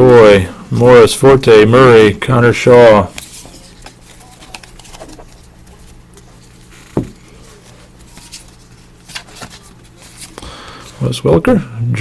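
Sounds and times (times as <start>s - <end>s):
low electrical hum: 0.0s - 12.0s
cards being flipped through: 3.1s - 10.8s.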